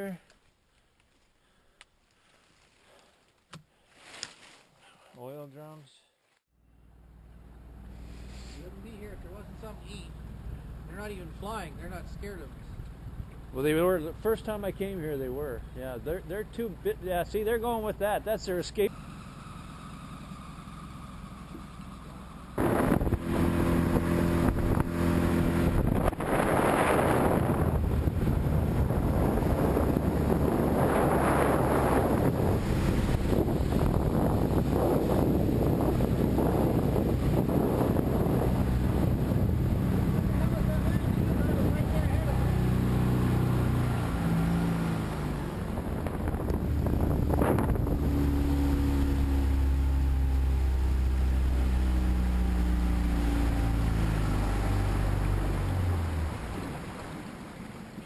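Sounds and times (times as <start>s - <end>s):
boat motor running: 6.9s - 58.0s
wind on microphone: 22.6s - 49.7s.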